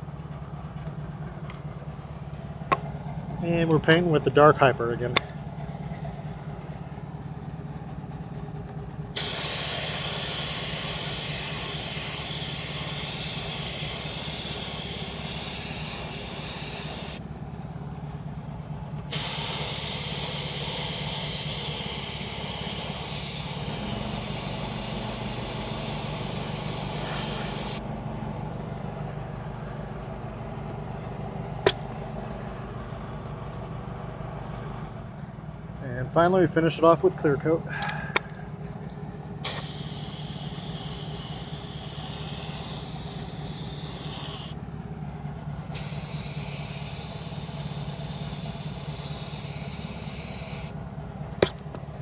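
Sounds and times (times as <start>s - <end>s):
steady low hum: 0.0s - 52.0s
spray paint hissing: 9.2s - 17.2s, 19.1s - 27.8s, 39.4s - 44.6s, 45.7s - 50.8s.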